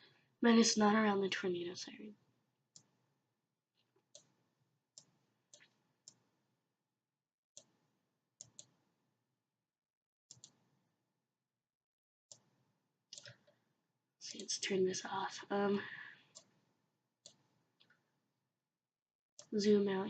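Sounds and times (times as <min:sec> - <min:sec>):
computer mouse clicking: 0:04.0 - 0:04.4, 0:08.4 - 0:08.8, 0:10.3 - 0:10.6, 0:17.2 - 0:18.0.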